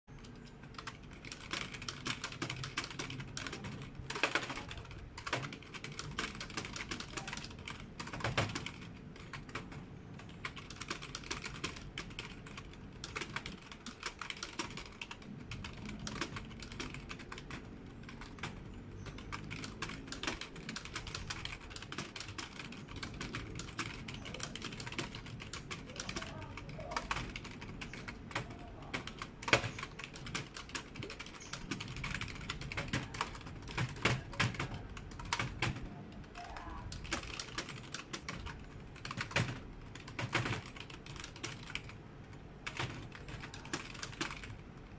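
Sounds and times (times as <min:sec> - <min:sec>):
typing on computer keyboard: 0:00.1 - 0:44.9.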